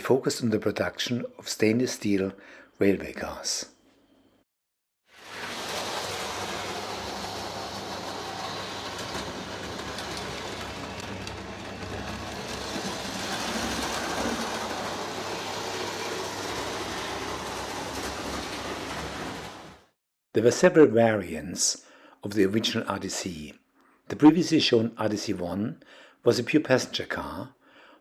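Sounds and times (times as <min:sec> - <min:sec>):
model train wheels rolling on rails: 0:05.1 - 0:20.0
electric motor humming: 0:05.2 - 0:19.8.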